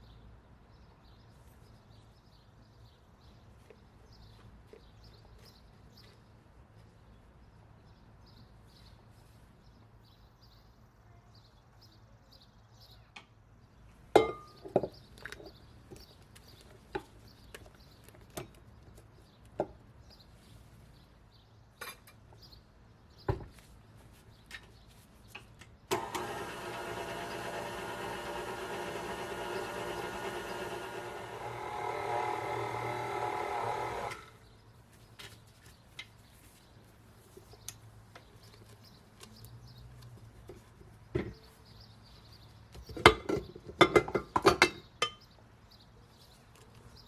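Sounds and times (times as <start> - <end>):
motor running: 25.9 - 34.4.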